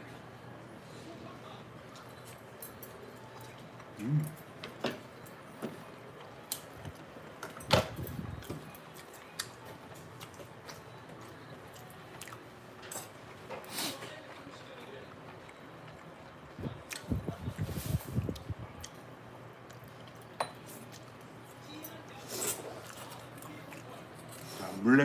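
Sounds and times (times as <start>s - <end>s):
person chewing: 10.2s - 12.4s
tableware clicks and knocks: 20.4s - 20.8s.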